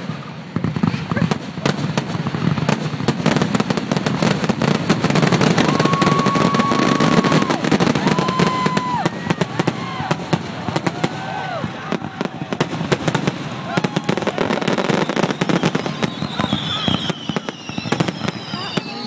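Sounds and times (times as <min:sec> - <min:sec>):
fireworks crackling and banging: 0:00.0 - 0:19.0
firework whistles bending down: 0:04.5 - 0:12.0, 0:12.6 - 0:19.0.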